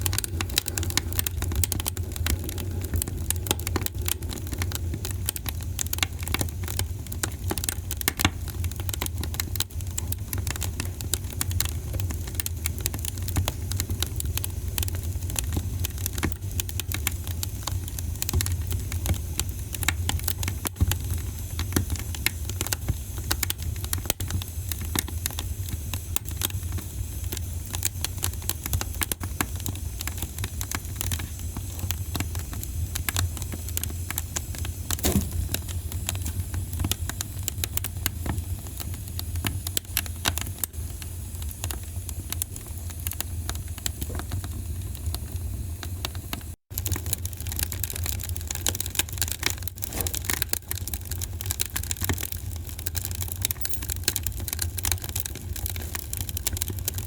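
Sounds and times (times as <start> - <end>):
wood fire crackling and popping: 0.0 - 57.0.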